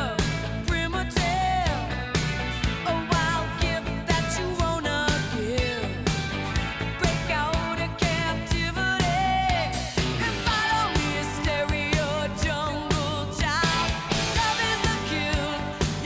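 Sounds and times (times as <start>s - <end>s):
pop-rock song with vocals: 0.0s - 16.0s
drum beat: 9.0s - 16.0s.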